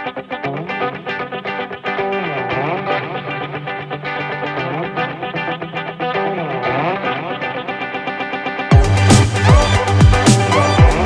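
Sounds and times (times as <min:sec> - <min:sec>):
effects-laden electric guitar melody: 0:00.0 - 0:11.0
steady bass note: 0:08.8 - 0:11.0.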